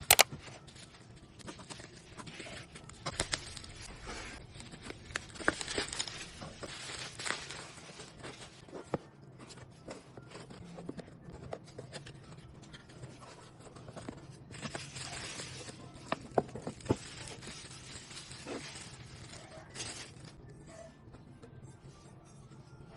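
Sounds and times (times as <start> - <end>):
sharp clicks and taps: 0.0 - 0.3
packaging tearing and rustling: 0.0 - 8.6, 14.5 - 20.3.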